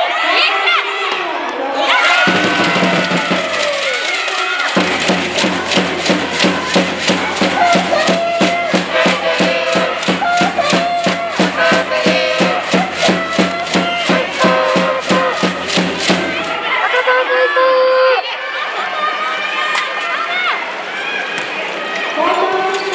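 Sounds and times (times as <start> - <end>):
music with fast steady beat: 2.3 - 4.1, 4.8 - 16.7.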